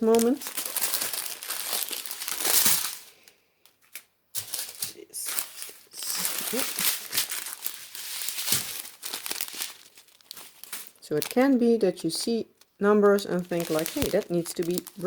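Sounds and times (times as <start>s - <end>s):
plastic bags crinkling: 0.0s - 15.0s.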